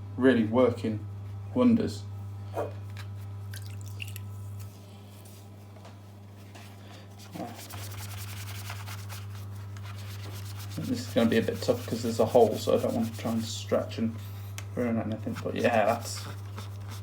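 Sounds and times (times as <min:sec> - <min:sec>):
steady low hum: 0:00.0 - 0:17.0
sponge scrubbing a rubber band: 0:07.2 - 0:13.6, 0:15.2 - 0:17.0.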